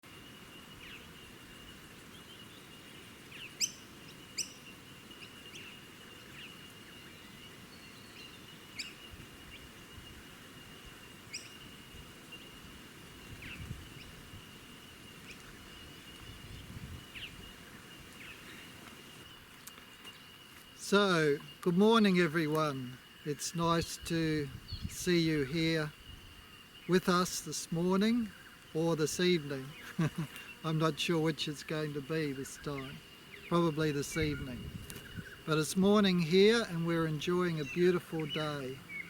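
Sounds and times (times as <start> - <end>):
birds chirping: 0.0 - 39.0
high-pitched whine: 20.8 - 29.8, 30.6 - 39.0.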